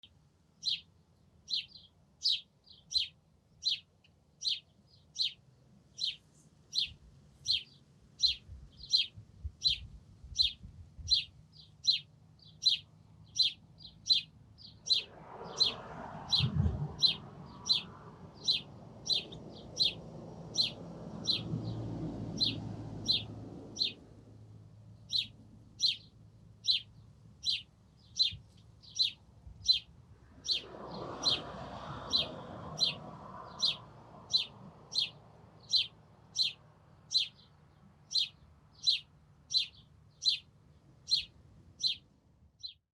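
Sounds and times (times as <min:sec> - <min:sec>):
small bird chirping: 0:00.0 - 0:24.0, 0:24.9 - 0:31.4, 0:32.1 - 0:42.9
car passing: 0:14.1 - 0:26.6, 0:29.0 - 0:39.0.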